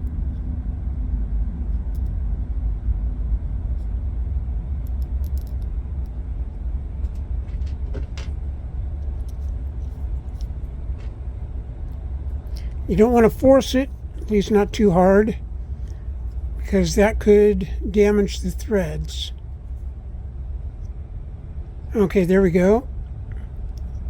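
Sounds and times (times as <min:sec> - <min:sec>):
low background rumble: 0:00.0 - 0:24.0
light clicks of small parts: 0:04.8 - 0:06.2, 0:09.0 - 0:11.2, 0:23.3 - 0:24.0.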